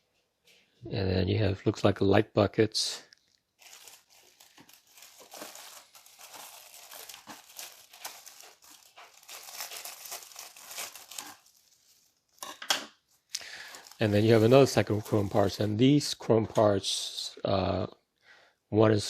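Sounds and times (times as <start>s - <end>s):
plastic bag crinkling: 3.1s - 12.4s, 13.3s - 15.8s.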